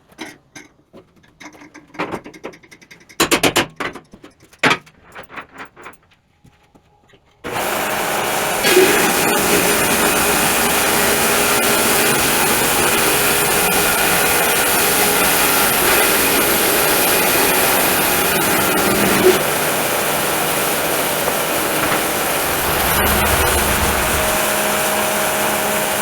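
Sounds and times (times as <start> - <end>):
sawmill blade cutting log: 7.5 - 26.0.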